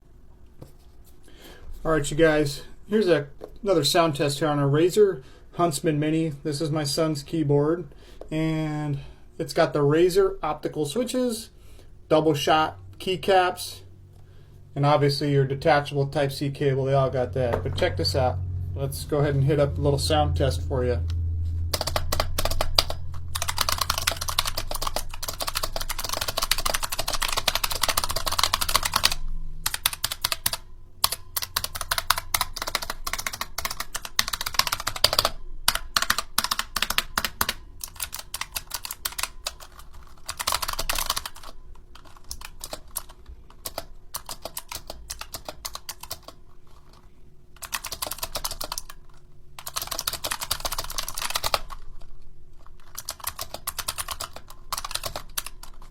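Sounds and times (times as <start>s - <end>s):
keyboard typing clicks: 21.7s - 46.4s, 49.6s - 51.8s, 52.9s - 55.9s.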